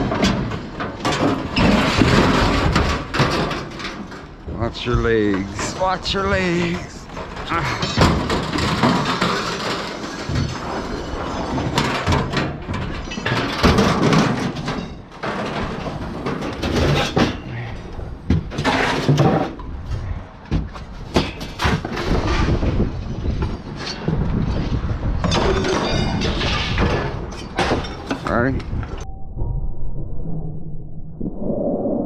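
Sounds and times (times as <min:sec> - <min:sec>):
scrap metal clanking and scraping: 0:00.0 - 0:19.8, 0:20.9 - 0:28.3
low rumble: 0:28.6 - 0:32.0.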